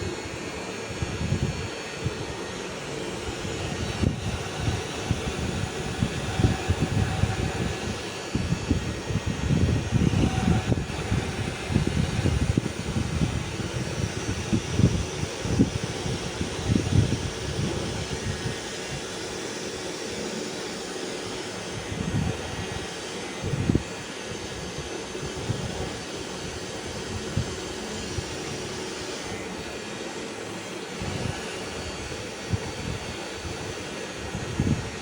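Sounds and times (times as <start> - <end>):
small motor running: 0.0 - 35.0.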